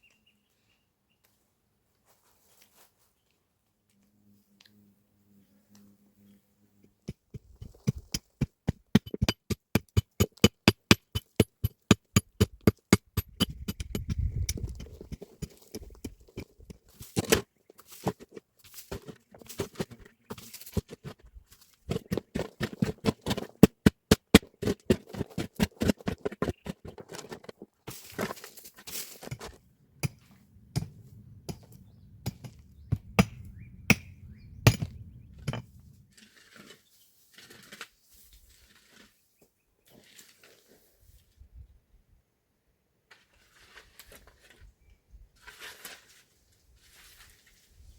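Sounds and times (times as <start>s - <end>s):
rapid hand tool blows: 7.1s - 17.2s.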